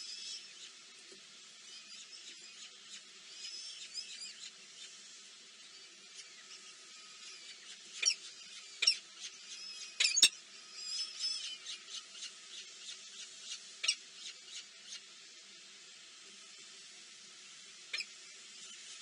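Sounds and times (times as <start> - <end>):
small birds chirping: 1.6 - 15.1, 17.9 - 19.0.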